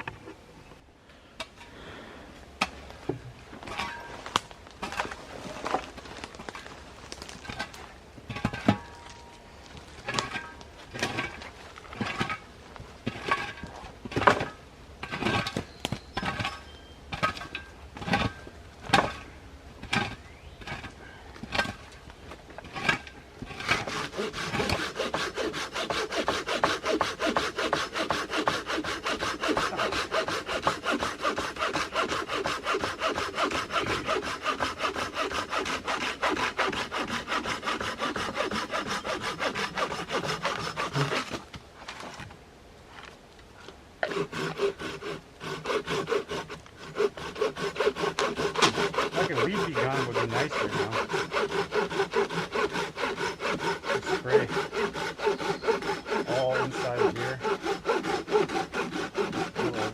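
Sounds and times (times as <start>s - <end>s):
hand saw cutting wood: 10.1s - 11.4s, 13.1s - 15.6s, 17.1s - 19.2s, 21.5s - 21.8s, 22.6s - 41.4s, 44.0s - 59.9s.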